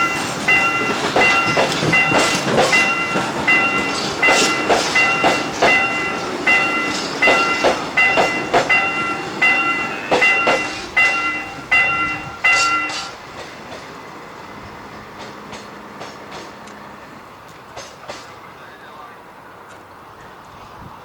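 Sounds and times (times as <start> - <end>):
railroad crossing bell ringing: 0.0 - 13.4.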